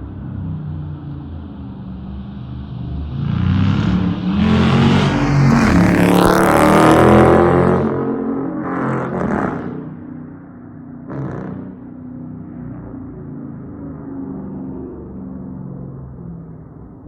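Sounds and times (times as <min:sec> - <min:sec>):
car engine revving: 0:03.0 - 0:09.6.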